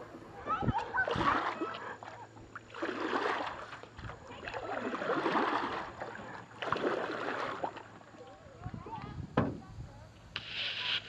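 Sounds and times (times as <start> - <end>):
paddle splashing in water: 0.7 - 8.4.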